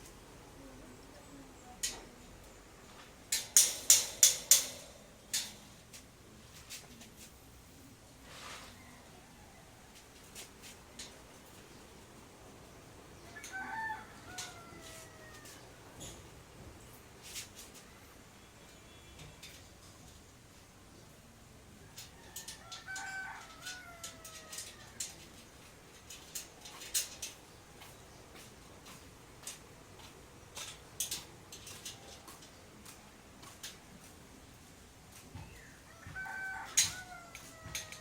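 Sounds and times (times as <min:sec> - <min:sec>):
rooster crowing: 0:08.6 - 0:10.0, 0:13.2 - 0:15.7, 0:21.8 - 0:25.2, 0:35.9 - 0:38.0.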